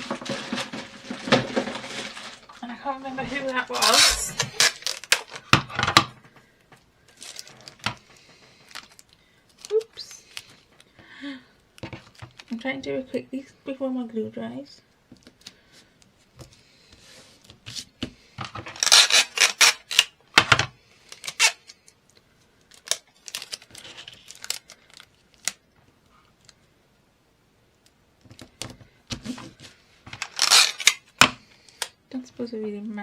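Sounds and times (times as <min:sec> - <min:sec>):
paper and card handled: 0:00.0 - 0:05.6, 0:17.0 - 0:20.1, 0:22.7 - 0:25.6, 0:29.1 - 0:31.9
sticky tape ripping: 0:03.7 - 0:05.5, 0:18.8 - 0:20.2, 0:21.1 - 0:21.8, 0:22.7 - 0:24.7, 0:30.2 - 0:31.2.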